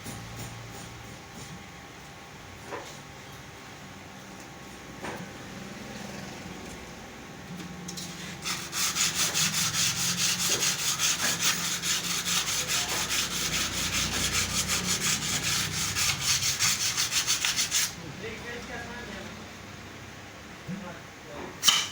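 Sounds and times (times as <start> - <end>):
rapid scraping strokes: 8.2 - 18.0.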